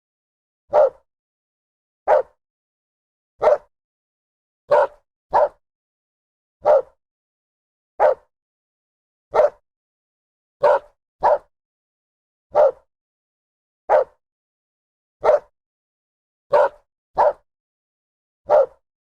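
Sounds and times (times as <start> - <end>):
dog barking: 0.7 - 1.1, 2.1 - 2.4, 3.4 - 3.7, 4.7 - 5.6, 6.6 - 7.0, 8.0 - 8.3, 9.3 - 9.6, 10.6 - 11.5, 12.5 - 12.9, 13.9 - 14.2, 15.2 - 15.5, 16.5 - 17.5, 18.5 - 18.8.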